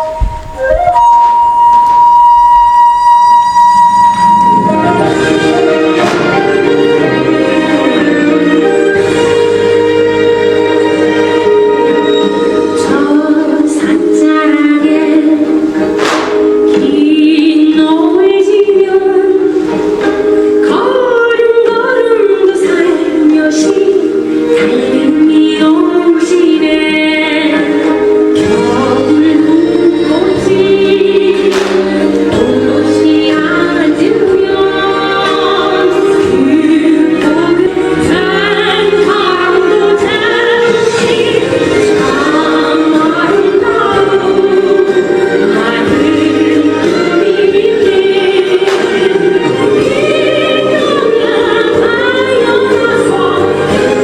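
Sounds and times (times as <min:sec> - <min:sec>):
sustained music accompaniment: 0:00.0 - 0:54.0
person singing: 0:11.0 - 0:54.0.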